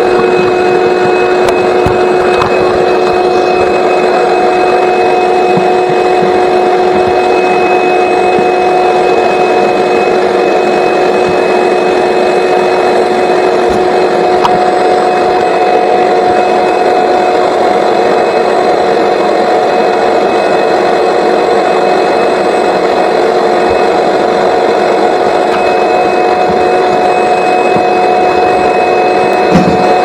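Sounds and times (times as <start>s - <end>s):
electric motor whining: 0.0s - 30.0s.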